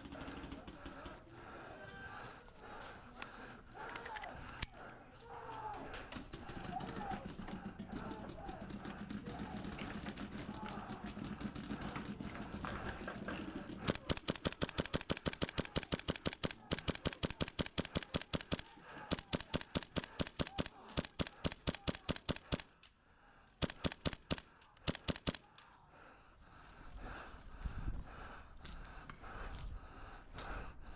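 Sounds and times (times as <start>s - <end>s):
airsoft gun full-auto shots: 13.8s - 22.8s, 23.6s - 25.5s.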